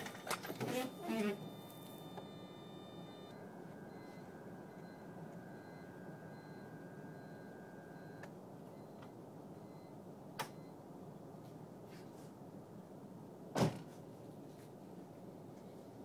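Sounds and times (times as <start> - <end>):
low steady hum: 0.0 - 13.5
thin high steady tone: 0.7 - 8.2.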